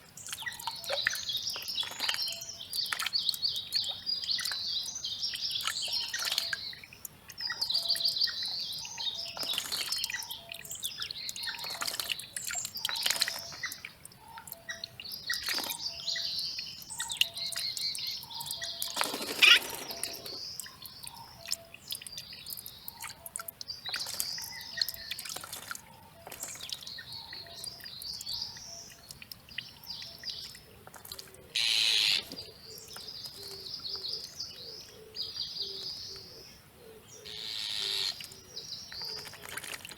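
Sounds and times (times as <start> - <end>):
songbirds chirping and singing: 0.0 - 39.9
loud sharp bird call: 31.6 - 32.4, 37.3 - 38.2.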